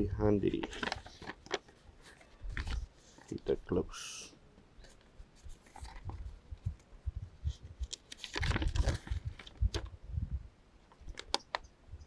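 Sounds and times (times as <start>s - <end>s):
paper and packaging crackling: 0.4s - 3.8s, 4.8s - 6.8s, 7.8s - 9.9s.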